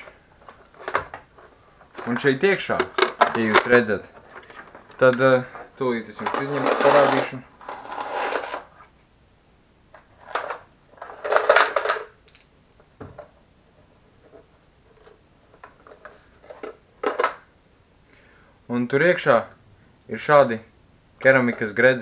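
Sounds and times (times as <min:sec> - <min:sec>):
plastic rustling and clicking: 0:00.0 - 0:09.0, 0:09.9 - 0:13.4, 0:14.2 - 0:17.5.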